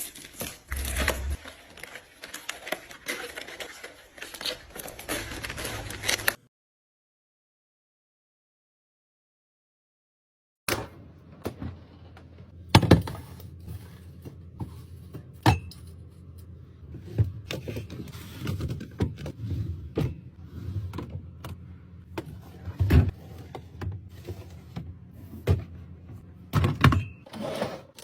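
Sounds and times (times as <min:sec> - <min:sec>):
fridge hum: 0:11.0 - 0:28.0.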